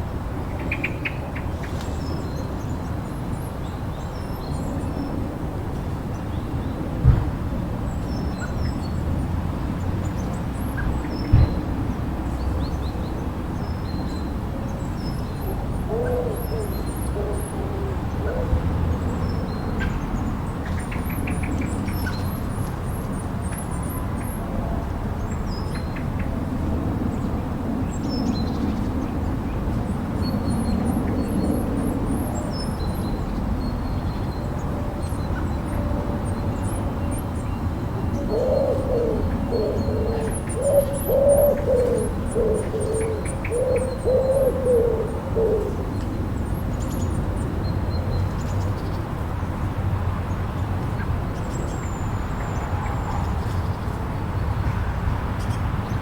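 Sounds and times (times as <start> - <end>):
owl hooting: 15.9 - 18.6, 38.1 - 46.0.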